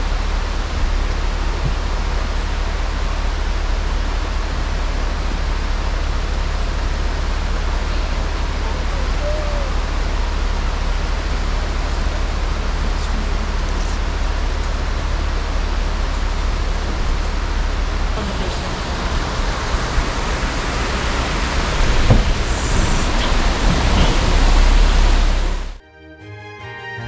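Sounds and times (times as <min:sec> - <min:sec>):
water rushing over rocks: 0:18.2 - 0:25.8.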